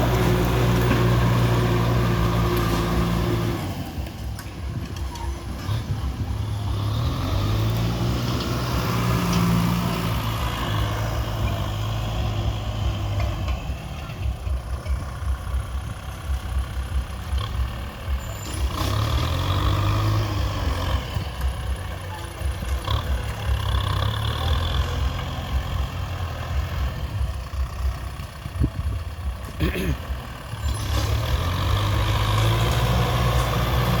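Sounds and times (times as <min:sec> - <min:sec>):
tractor engine running under load: 0:00.0 - 0:34.0.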